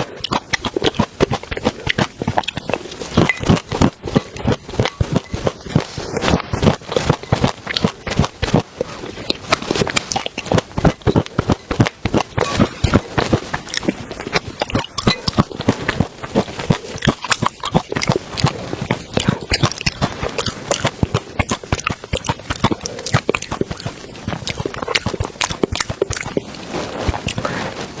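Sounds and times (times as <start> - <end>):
person chewing crunchy food: 0.0 - 28.0.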